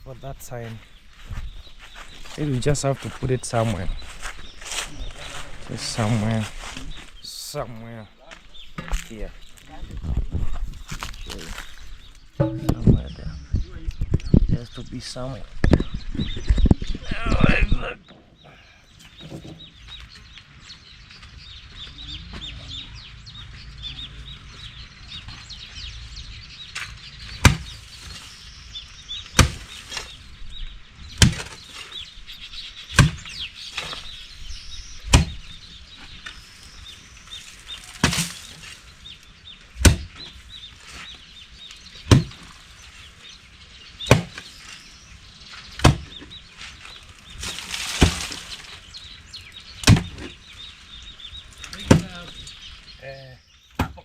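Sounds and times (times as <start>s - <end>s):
digging tool striking ground: 12.4s - 13.2s.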